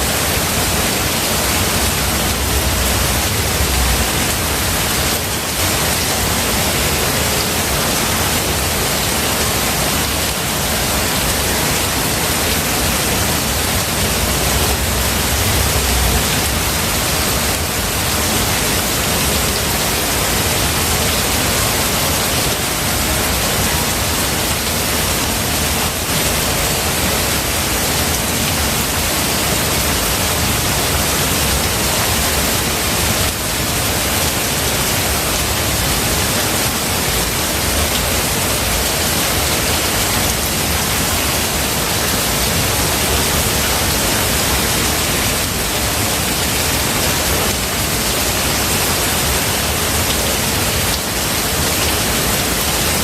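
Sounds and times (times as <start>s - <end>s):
low rumble: 0.0s - 6.7s, 12.3s - 19.3s
rain on foliage: 0.0s - 53.0s.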